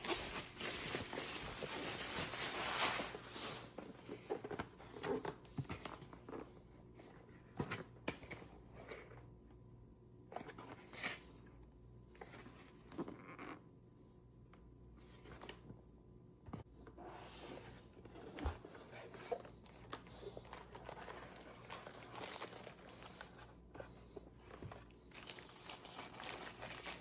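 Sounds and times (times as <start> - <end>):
packaging rustling and crinkling: 0.0 - 6.5, 18.2 - 27.0.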